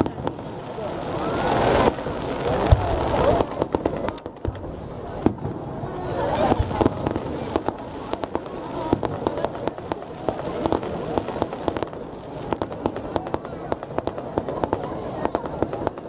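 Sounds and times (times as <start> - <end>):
fireworks crackling and banging: 0.0 - 16.0
onlookers murmuring: 0.0 - 16.0.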